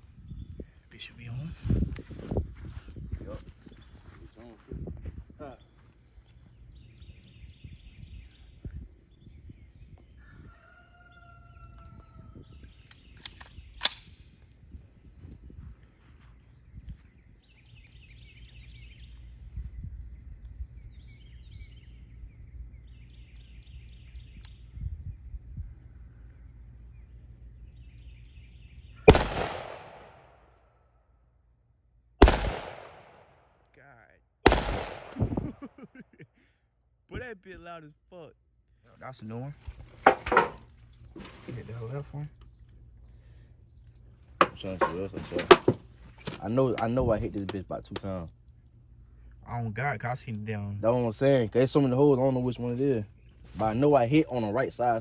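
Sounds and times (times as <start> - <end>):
rooster crowing: 10.2 - 12.5
loud gunshots with echo: 29.1 - 30.4, 32.2 - 33.4, 34.4 - 35.5
sharp crack: 29.1 - 30.4, 32.2 - 33.4, 34.4 - 35.6.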